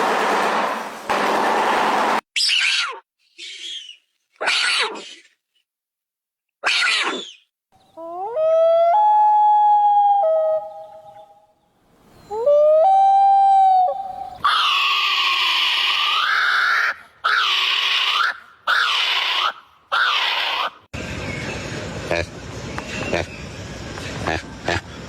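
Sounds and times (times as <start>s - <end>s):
harsh rasping calls: 2.4s - 5.4s, 14.4s - 20.9s, 22.0s - 25.0s
animal howling: 8.0s - 11.3s.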